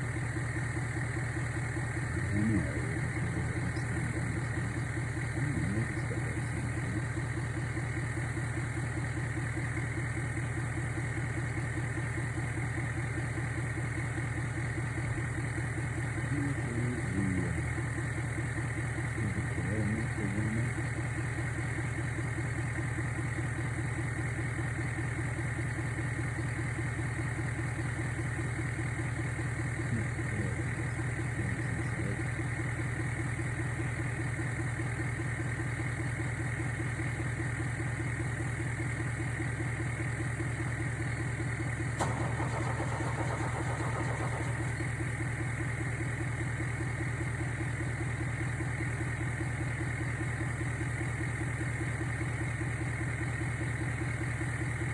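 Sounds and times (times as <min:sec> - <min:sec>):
motor running with rapid beat: 0:02.0 - 0:07.8, 0:41.6 - 0:46.3.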